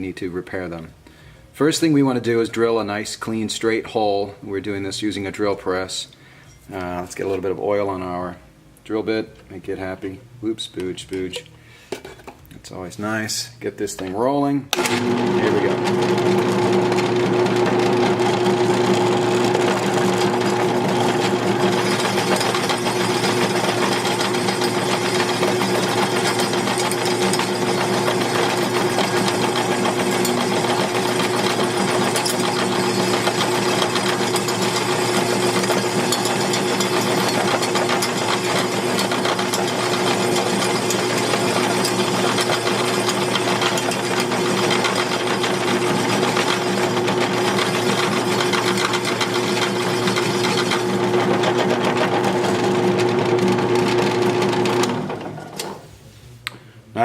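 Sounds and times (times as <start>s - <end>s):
drill press motor humming: 14.8s - 55.8s.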